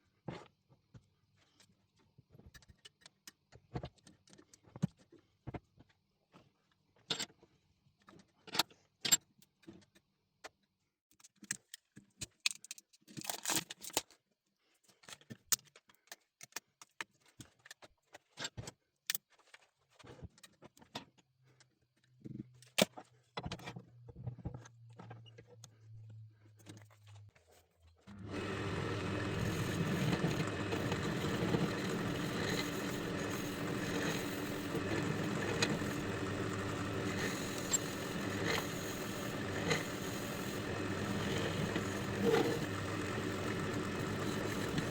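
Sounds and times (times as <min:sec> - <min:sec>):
workshop machine motor: 0:28.1 - 0:44.9.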